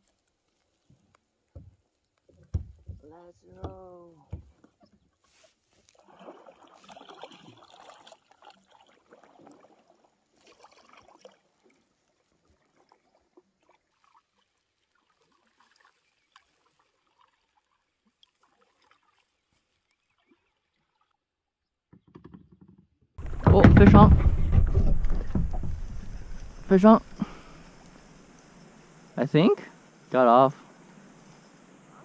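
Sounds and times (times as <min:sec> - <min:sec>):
kayak paddle splashing in water: 0:04.4 - 0:21.2, 0:23.2 - 0:29.2
water trickling: 0:05.9 - 0:21.1, 0:23.2 - 0:32.0.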